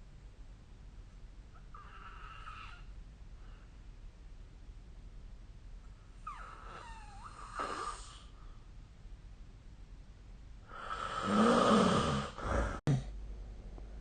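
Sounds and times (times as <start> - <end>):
person snoring: 10.7 - 13.1.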